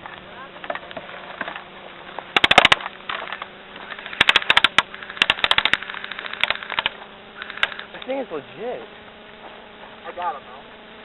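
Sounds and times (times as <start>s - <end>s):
airsoft gun shots: 2.4s - 2.9s, 3.9s - 7.9s.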